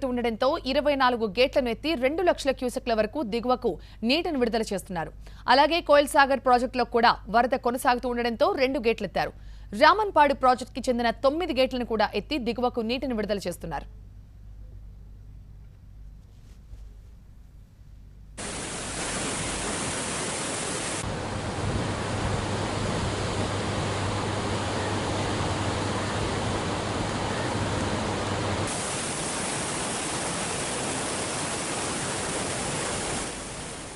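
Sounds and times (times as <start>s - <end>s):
water rushing through spillway: 18.4s - 33.9s.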